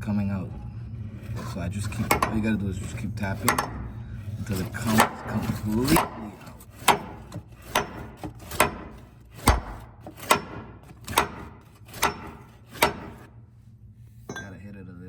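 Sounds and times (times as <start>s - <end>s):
hammer tapping on metal bolt: 3.4s - 3.8s, 5.9s - 13.3s.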